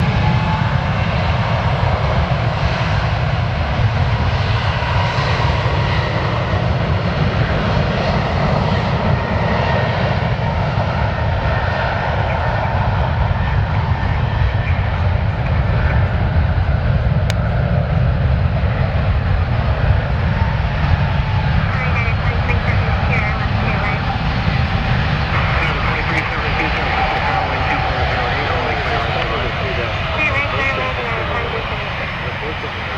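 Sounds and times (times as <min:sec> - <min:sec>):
jet engines rumbling: 0:00.0 - 0:32.9
faint engine whine: 0:11.3 - 0:32.9.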